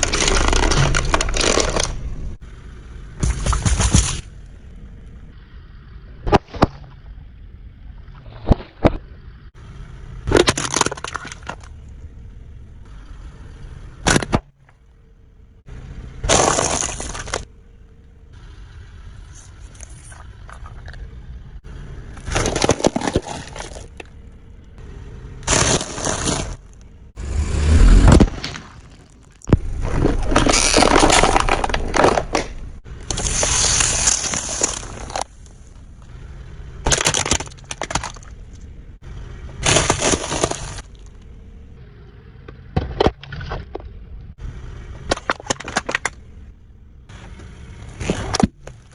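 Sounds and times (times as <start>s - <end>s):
tyres crushing objects: 0.0s - 2.4s, 3.2s - 4.5s, 10.2s - 11.9s, 14.0s - 14.8s, 16.2s - 17.5s, 22.1s - 24.4s, 25.4s - 36.2s, 36.8s - 38.8s, 39.5s - 41.3s, 44.9s - 48.9s
low rumble: 0.0s - 48.9s.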